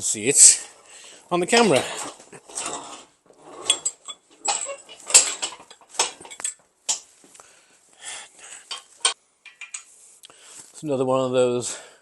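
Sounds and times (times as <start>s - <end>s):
person breathing heavily: 0.8s - 1.3s, 7.4s - 8.8s, 10.0s - 10.7s, 11.7s - 12.0s
clunks and scrapes of heavy engine: 1.6s - 6.4s.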